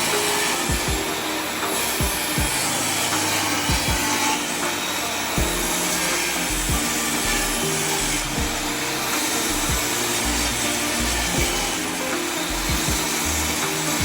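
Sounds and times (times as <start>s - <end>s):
background music: 0.0s - 14.0s
power tool cutting wood: 0.0s - 14.0s.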